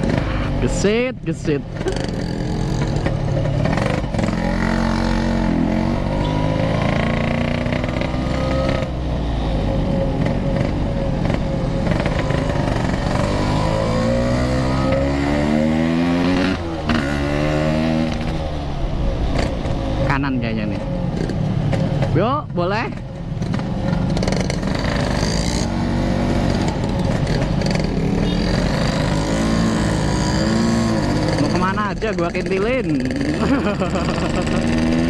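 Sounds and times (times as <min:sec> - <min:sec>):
two-stroke motorcycle engine revving: 0:00.0 - 0:35.0.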